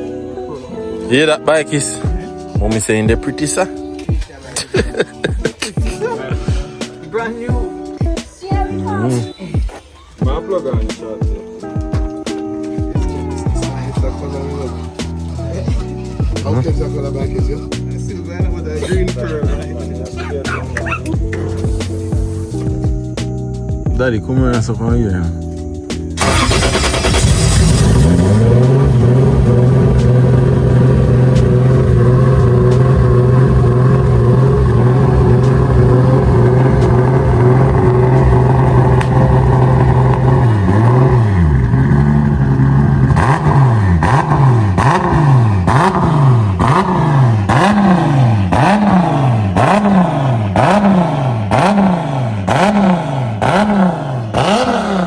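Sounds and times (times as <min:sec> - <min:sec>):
car engine idling and revving: 0:12.1 - 0:55.0
exhaust pops: 0:26.2 - 0:55.0.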